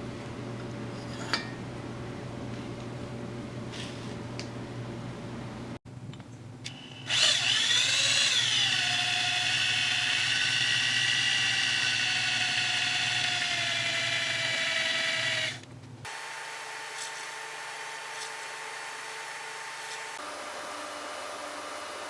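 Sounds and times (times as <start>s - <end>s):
electric drill motor whine: 6.7s - 15.6s.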